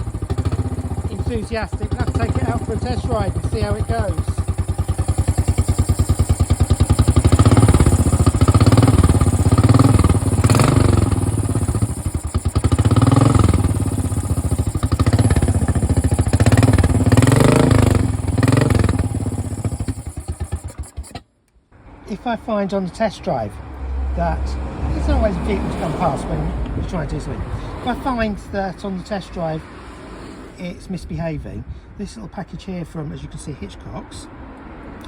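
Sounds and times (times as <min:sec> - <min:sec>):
motorcycle engine revving: 0:00.0 - 0:21.2, 0:24.2 - 0:30.6.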